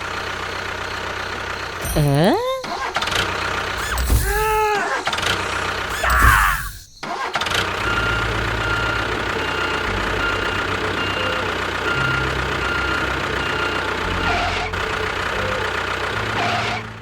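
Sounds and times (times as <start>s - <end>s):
swooping voice-like sounds: 1.8s - 3.0s, 3.8s - 5.2s, 5.9s - 6.9s
engine starting and running: 2.7s - 17.0s.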